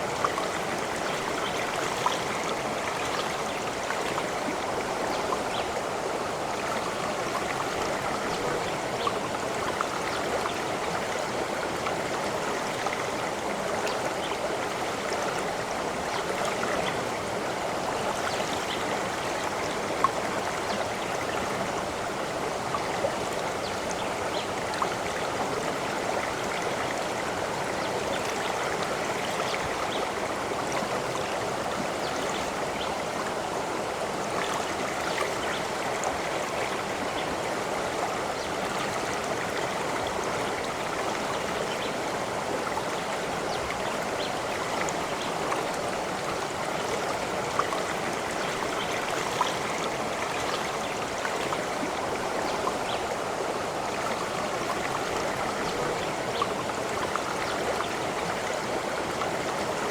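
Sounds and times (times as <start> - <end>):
stream water babbling: 0.0 - 59.9.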